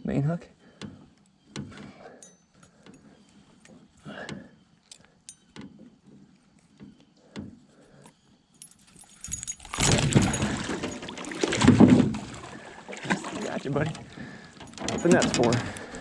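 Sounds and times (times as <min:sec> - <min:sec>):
fish thrashing in landing net: 0:09.0 - 0:13.6
fishing tackle clicks and knocks: 0:13.8 - 0:16.0.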